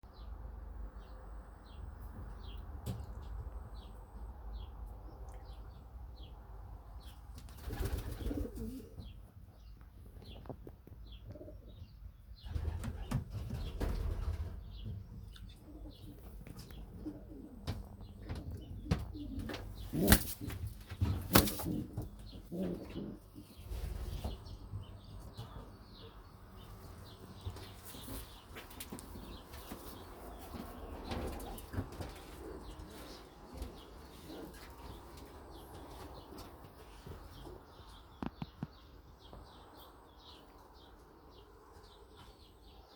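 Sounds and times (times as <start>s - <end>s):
pigeons flapping wings: 7.4s - 8.8s, 21.2s - 21.9s
pigeons cooing: 7.6s - 9.1s, 15.6s - 20.6s, 21.3s - 24.3s.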